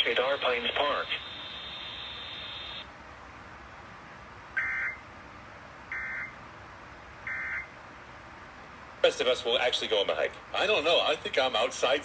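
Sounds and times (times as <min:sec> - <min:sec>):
digital data tone bursts: 0:00.0 - 0:02.8
faint radio hiss: 0:00.0 - 0:04.6, 0:07.8 - 0:12.0.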